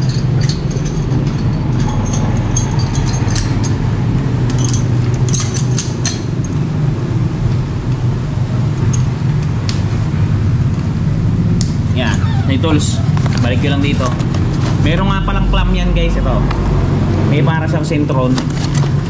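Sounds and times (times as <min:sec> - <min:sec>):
metal hand tools clinking: 0:00.0 - 0:03.9, 0:04.5 - 0:06.6
low motor hum: 0:00.0 - 0:17.5.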